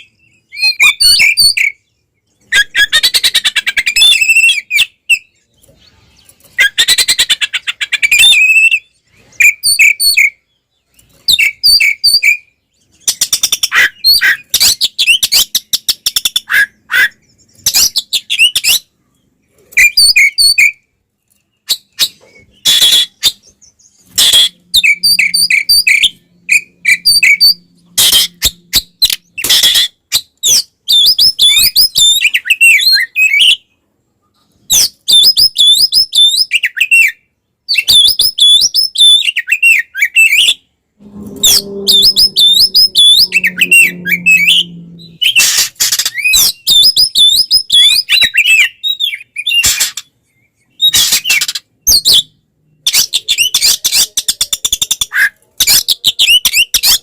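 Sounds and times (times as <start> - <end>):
bird singing rapid chirps: 21.6 - 33.6, 34.8 - 57.0.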